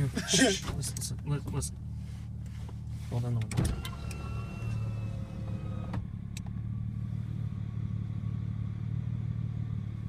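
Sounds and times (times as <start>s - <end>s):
power window motor whining: 3.6s - 6.4s.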